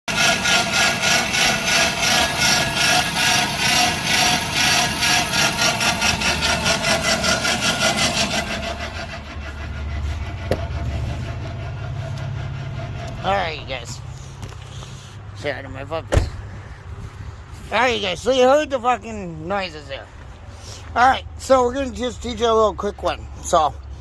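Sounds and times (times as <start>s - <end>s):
rhythmic rasping grinding noise: 0.1s - 15.3s
low engine hum: 0.1s - 24.0s.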